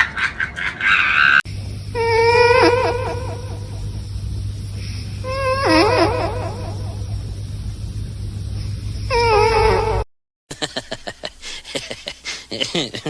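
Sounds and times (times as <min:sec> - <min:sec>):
pet animal crying out: 0:01.0 - 0:03.8, 0:05.2 - 0:07.0, 0:09.1 - 0:10.0.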